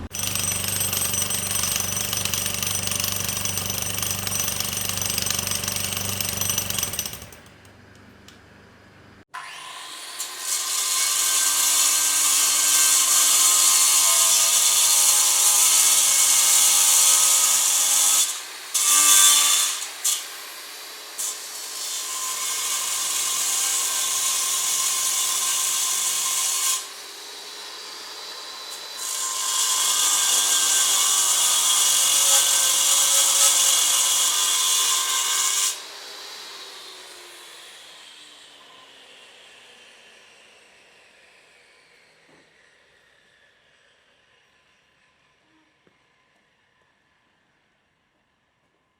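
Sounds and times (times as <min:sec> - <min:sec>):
power tool cutting wood: 0:00.0 - 0:07.4, 0:21.2 - 0:42.5.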